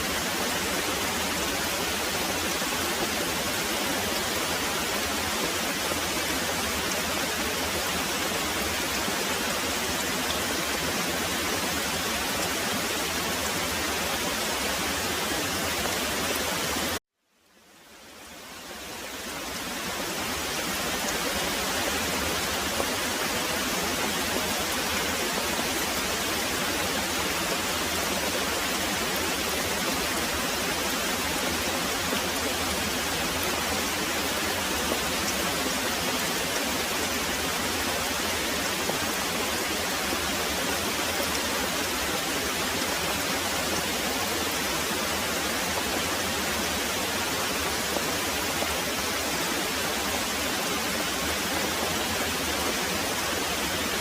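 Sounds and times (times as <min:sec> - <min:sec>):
heavy rain pouring: 0:00.0 - 0:17.0, 0:18.2 - 0:54.0.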